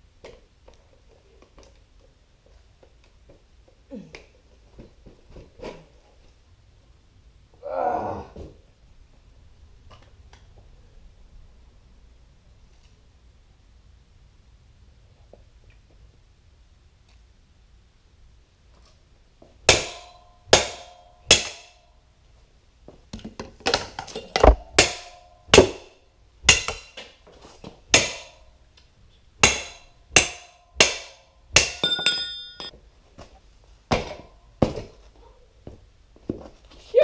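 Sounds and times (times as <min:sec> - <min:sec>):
sharp metal knocks: 0:19.7 - 0:21.9, 0:23.7 - 0:27.1, 0:27.9 - 0:28.4, 0:29.4 - 0:32.7.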